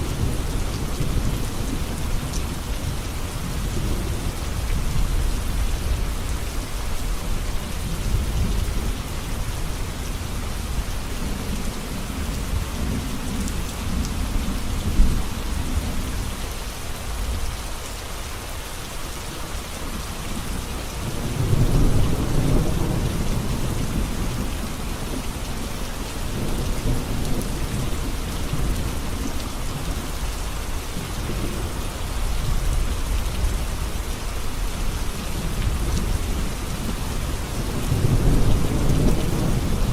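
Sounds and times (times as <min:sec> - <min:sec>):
heavy rain on road: 0:00.0 - 0:39.9
thunder rumbling: 0:35.1 - 0:39.9.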